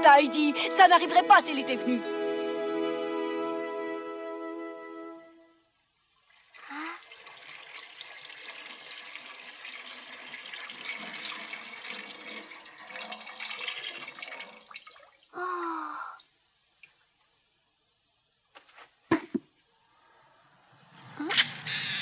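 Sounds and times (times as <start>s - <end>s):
liquid pouring: 6.1s - 15.4s.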